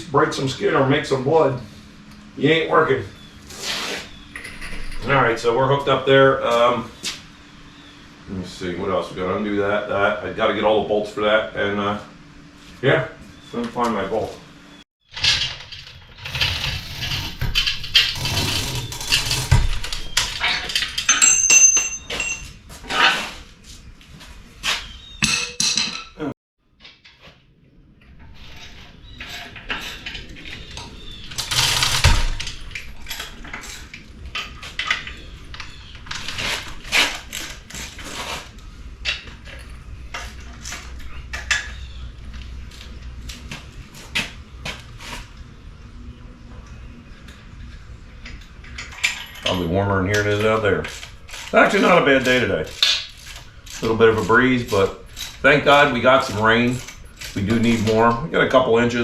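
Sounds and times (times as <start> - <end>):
metal bolts clinking: 19.7 - 22.6.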